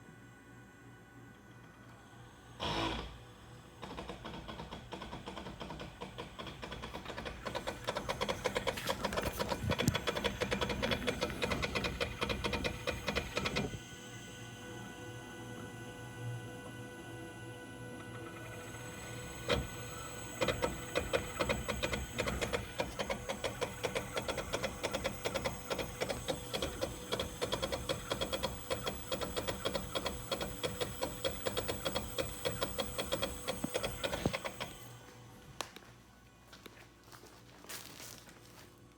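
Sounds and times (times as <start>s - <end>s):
rapid mechanical clicking: 3.8s - 13.8s, 18.2s - 34.9s
steady hum: 5.4s - 38.9s.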